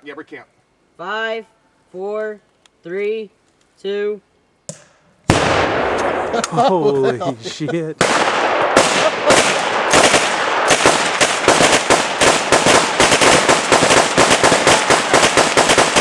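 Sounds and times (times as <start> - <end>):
rapid gunfire: 8.0 - 16.0.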